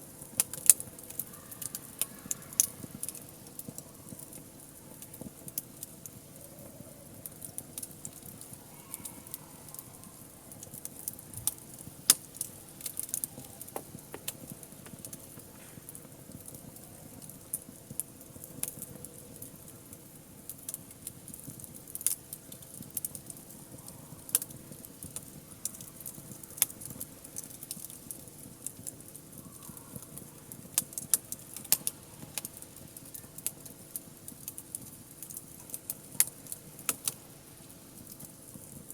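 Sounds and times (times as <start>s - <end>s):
wood fire crackling and popping: 0.0s - 38.9s.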